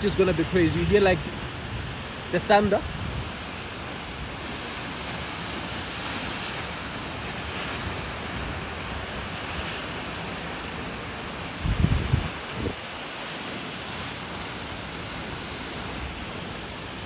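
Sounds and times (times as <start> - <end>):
wind rumbling on microphone: 0.0 - 4.7, 11.4 - 13.1
waterfall rushing: 0.0 - 17.0.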